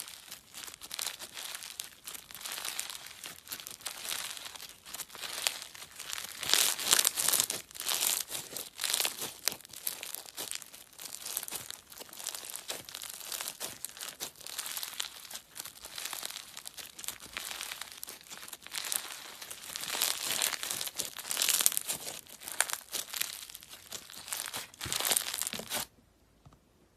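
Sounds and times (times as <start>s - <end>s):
slime squished by hand: 0.0s - 25.9s.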